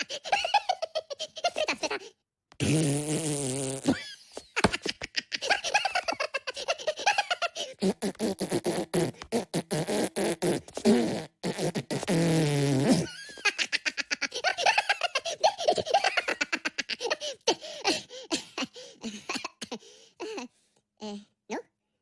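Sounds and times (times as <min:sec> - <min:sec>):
high-pitched giggling: 0:00.0 - 0:02.2, 0:03.9 - 0:07.9, 0:13.0 - 0:19.4
cartoon fart noises: 0:02.5 - 0:04.8, 0:07.7 - 0:13.3.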